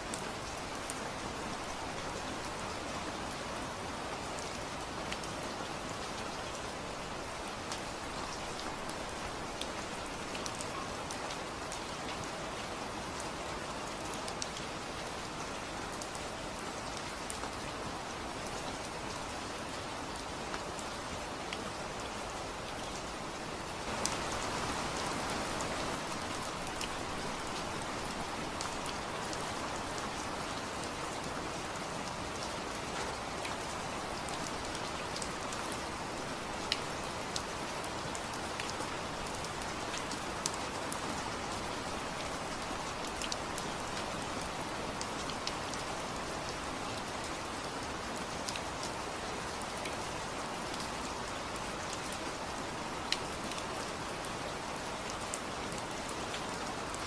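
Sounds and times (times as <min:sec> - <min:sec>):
rain falling: 0:00.0 - 0:57.0
raindrops ticking on a surface: 0:23.8 - 0:47.3.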